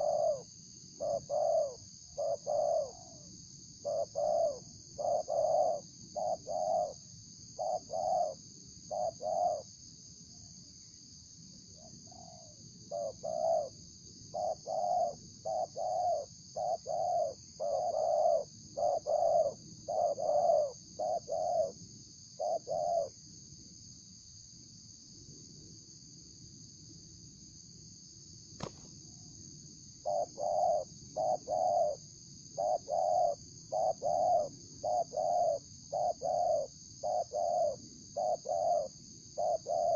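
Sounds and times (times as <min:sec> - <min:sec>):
dove cooing: 0:00.0 - 0:07.0, 0:07.6 - 0:09.7, 0:11.8 - 0:21.8, 0:22.4 - 0:23.1, 0:30.0 - 0:32.0, 0:32.6 - 0:39.9
single sharp click: 0:28.6 - 0:28.9.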